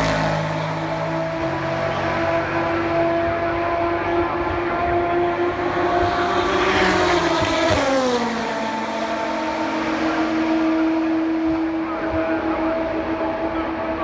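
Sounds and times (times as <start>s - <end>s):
race car passing at speed: 0.0s - 14.0s
steady engine tone: 0.0s - 14.0s.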